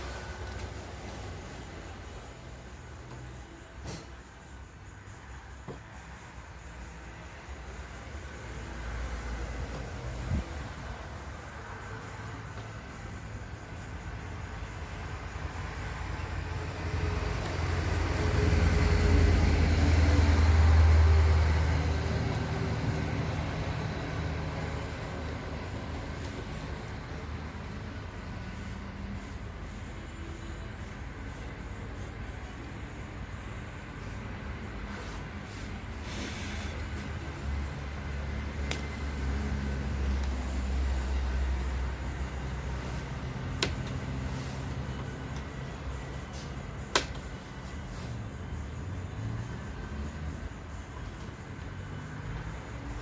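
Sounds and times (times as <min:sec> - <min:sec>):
low mechanical hum: 0:00.0 - 0:53.0
heavy vehicle passing rumble: 0:15.5 - 0:53.0.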